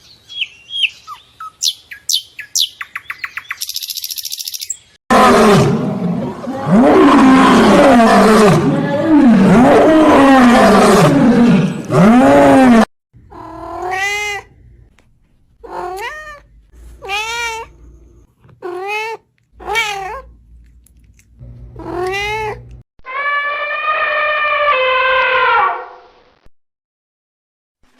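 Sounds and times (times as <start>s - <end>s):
cat yowling: 12.5s - 14.5s, 15.6s - 17.7s, 18.6s - 20.3s, 21.8s - 25.9s
cat meowing: 13.3s - 14.5s, 15.6s - 17.8s, 18.6s - 20.3s, 21.8s - 25.6s.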